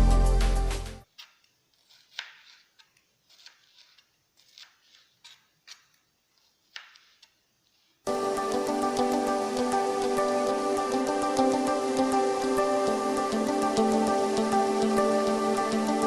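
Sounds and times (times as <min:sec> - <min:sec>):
background music: 0:00.0 - 0:01.0, 0:08.1 - 0:16.0.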